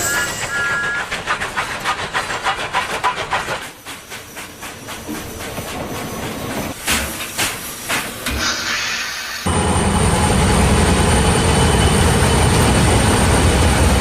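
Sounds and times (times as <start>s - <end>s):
steam locomotive chuffing: 0.0s - 14.0s
hissing steam: 1.3s - 9.5s.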